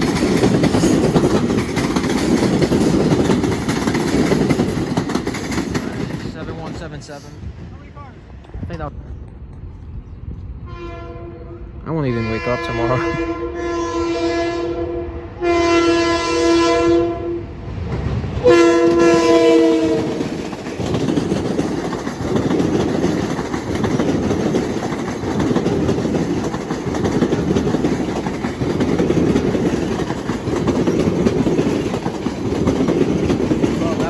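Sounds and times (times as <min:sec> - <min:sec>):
wheels clacking over rail joints: 0:00.0 - 0:07.2, 0:19.9 - 0:34.0
train rumbling past: 0:00.0 - 0:34.0
train horn blasts: 0:10.6 - 0:17.6, 0:18.4 - 0:20.3.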